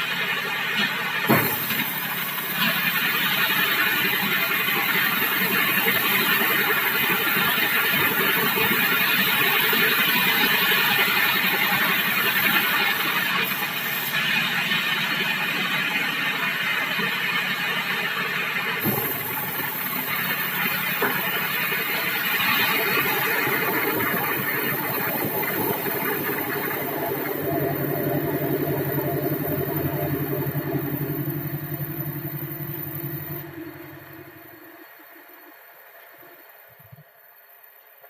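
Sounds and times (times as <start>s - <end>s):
sawmill saw cutting log: 0.7s - 16.4s, 17.0s - 34.3s.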